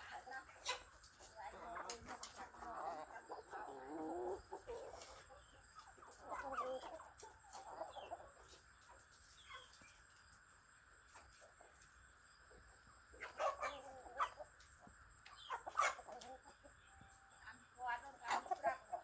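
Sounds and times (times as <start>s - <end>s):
chickens clucking: 0.0s - 19.0s.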